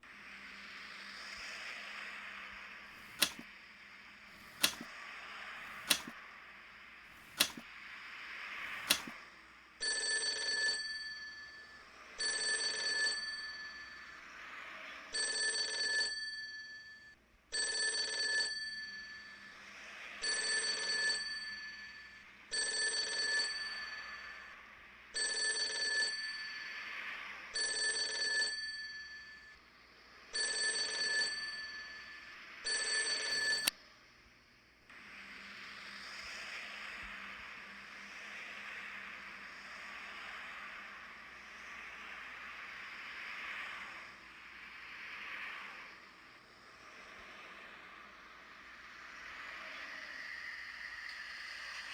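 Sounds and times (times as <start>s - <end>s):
sharp clicks: 3.0s - 3.4s, 4.4s - 4.9s, 5.7s - 6.2s, 7.2s - 7.6s, 8.7s - 9.2s
telephone bell ringing: 9.8s - 14.2s, 15.1s - 19.6s, 20.2s - 24.6s, 25.2s - 26.9s, 27.5s - 29.6s, 30.3s - 33.7s.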